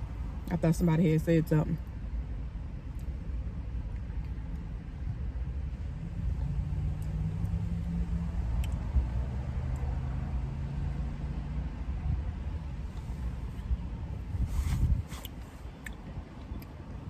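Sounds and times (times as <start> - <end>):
car engine rumbling: 12.4 - 16.4.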